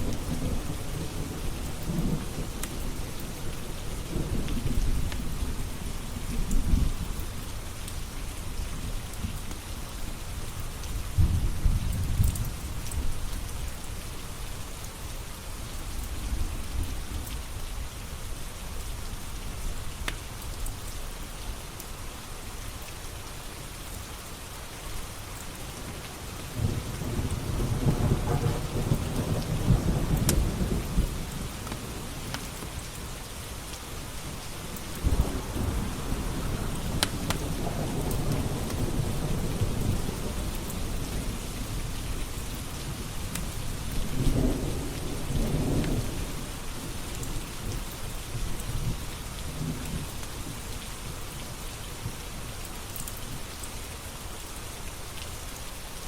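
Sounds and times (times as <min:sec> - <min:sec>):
heavy rain: 0:00.0 - 0:56.0
thunder rumbling: 0:26.6 - 0:32.6, 0:34.8 - 0:42.3, 0:42.9 - 0:47.0
log fire crackling pops: 0:36.9 - 0:37.5.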